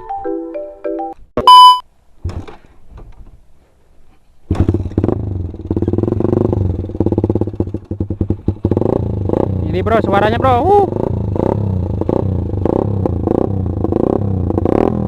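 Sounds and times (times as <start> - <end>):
short loud beep: 1.4 - 1.8
motorcycle engine running loud: 4.5 - 15.0.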